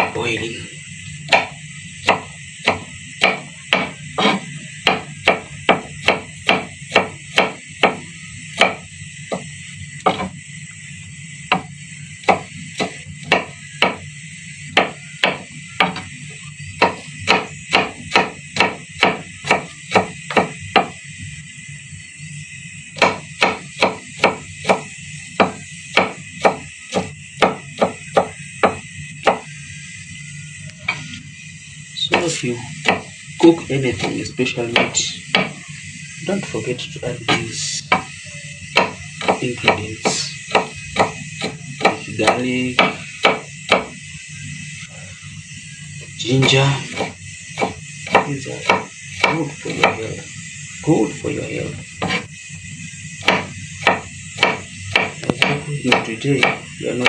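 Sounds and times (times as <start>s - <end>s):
knife chopping on cutting board: 1.3s - 8.0s, 8.6s - 9.4s, 10.0s - 10.3s, 12.3s - 14.0s, 14.8s - 16.1s, 16.8s - 21.0s, 23.0s - 29.5s, 32.8s - 33.1s, 34.0s - 35.6s, 38.8s - 44.0s, 46.9s - 50.0s, 52.0s - 52.2s, 53.2s - 56.6s.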